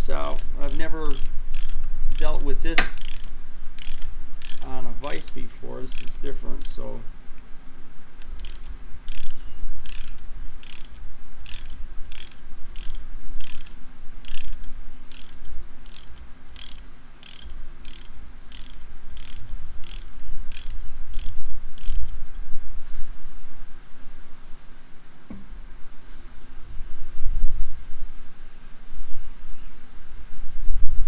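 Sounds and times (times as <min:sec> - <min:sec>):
ratchet wrench clicking: 0:00.2 - 0:06.9, 0:08.2 - 0:22.1.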